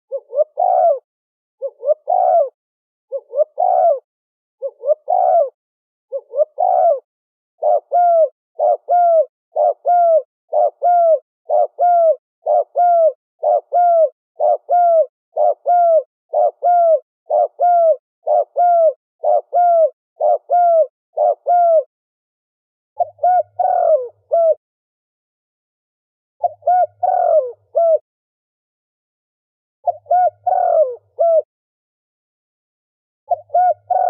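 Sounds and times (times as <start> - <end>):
dove cooing: 0.1 - 21.9, 23.0 - 24.6, 26.4 - 28.0, 29.9 - 31.5, 33.3 - 34.0.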